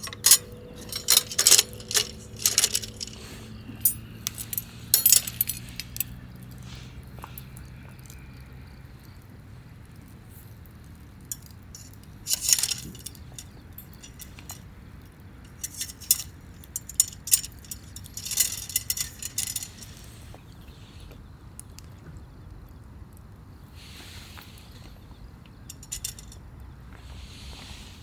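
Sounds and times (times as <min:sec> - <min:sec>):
small hard objects clinking: 0:00.0 - 0:06.2, 0:11.3 - 0:14.6, 0:15.5 - 0:20.0, 0:25.7 - 0:26.4.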